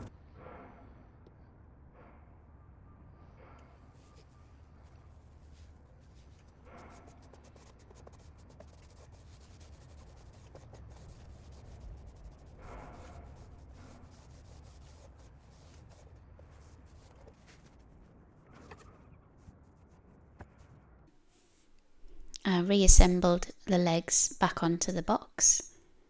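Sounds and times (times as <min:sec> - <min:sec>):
scrubbing strokes: 0:05.0 - 0:18.0
rubbing on wooden surface: 0:05.0 - 0:20.1.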